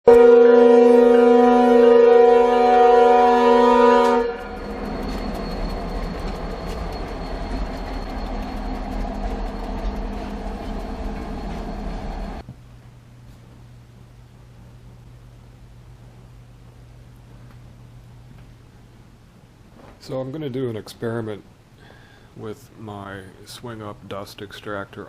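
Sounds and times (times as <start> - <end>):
horn sounding a chord: 0.1 - 4.7
low steady rumble: 3.2 - 21.8.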